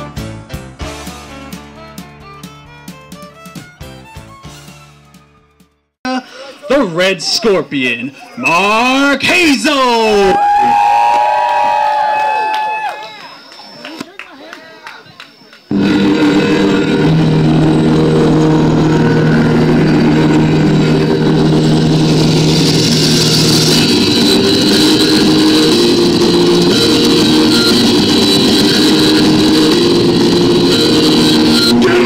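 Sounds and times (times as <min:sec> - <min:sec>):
loud rock music: 0:00.0 - 0:05.4, 0:15.7 - 0:32.0.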